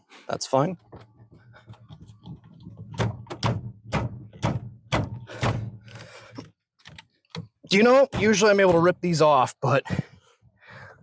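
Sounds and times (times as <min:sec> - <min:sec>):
steering wheel knocks and thunks: 0:00.8 - 0:09.4.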